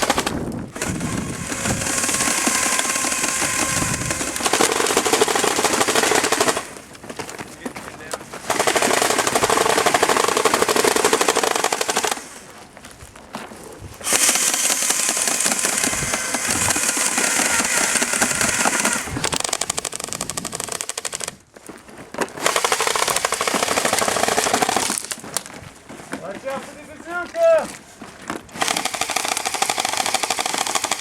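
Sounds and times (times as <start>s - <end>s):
airsoft guns firing full-auto: 0.0s - 6.8s, 8.4s - 12.4s, 14.0s - 21.4s, 22.4s - 25.2s, 28.6s - 31.0s.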